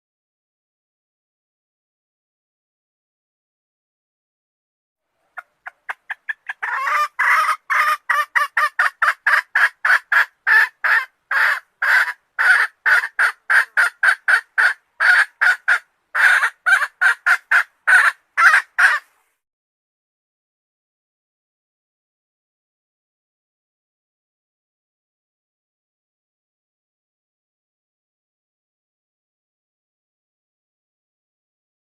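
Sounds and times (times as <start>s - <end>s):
hen clucking: 5.2s - 19.1s.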